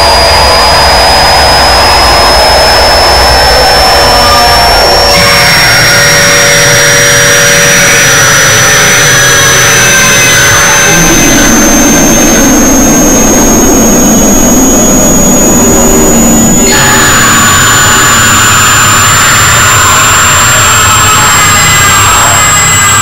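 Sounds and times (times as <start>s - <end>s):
dense roaring noise: 0.0s - 6.5s, 10.6s - 20.7s
piercing high tone rising: 0.0s - 23.0s.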